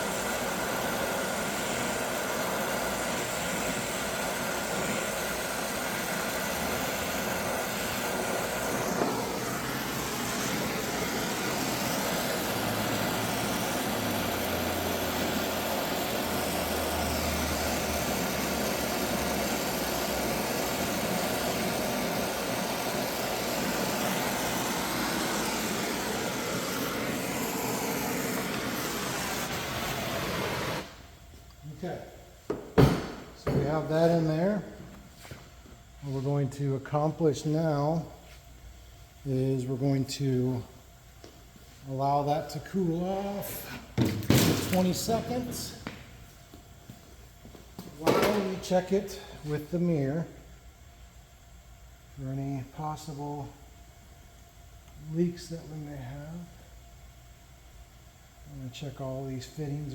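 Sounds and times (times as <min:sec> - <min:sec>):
torch flame hissing: 0:00.0 - 0:31.2, 0:41.8 - 0:50.4.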